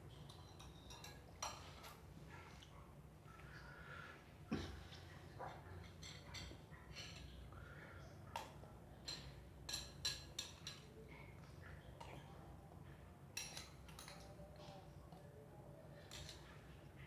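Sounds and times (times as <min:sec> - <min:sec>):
cutlery clinking against dish: 0:00.1 - 0:02.0, 0:05.4 - 0:07.4, 0:08.4 - 0:11.0, 0:13.3 - 0:14.9, 0:16.1 - 0:16.5.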